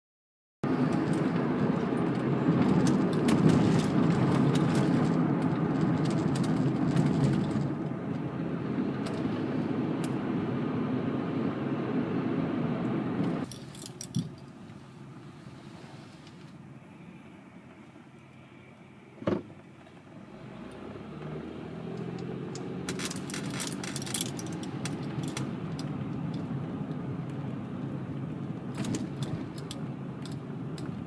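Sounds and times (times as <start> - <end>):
car engine and road noise: 0.6 - 31.0
rattles and jingles of keys: 13.4 - 14.5, 22.9 - 26.4
thump inside car: 19.2 - 19.5.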